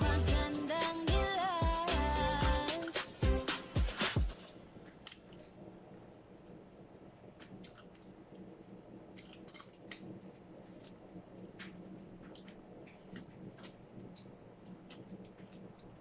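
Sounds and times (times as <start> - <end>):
chewing crunchy food: 7.4 - 16.0.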